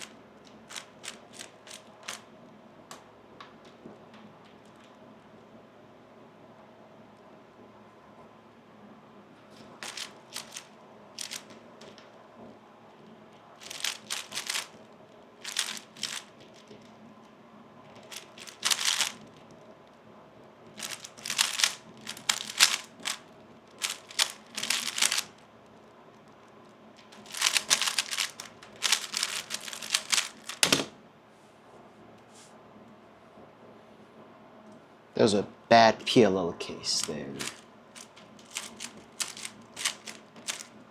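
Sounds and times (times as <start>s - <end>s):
rapid plastic cube clicking: 0.0s - 2.3s, 9.8s - 12.0s, 13.6s - 14.8s, 15.4s - 16.9s, 18.0s - 19.4s, 20.8s - 25.4s, 27.0s - 30.9s, 37.0s - 40.8s.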